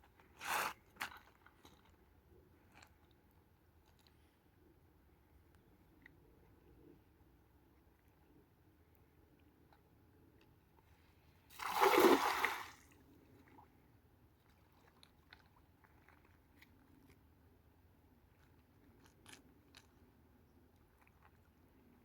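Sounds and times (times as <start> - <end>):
splash in water: 11.5 - 12.8.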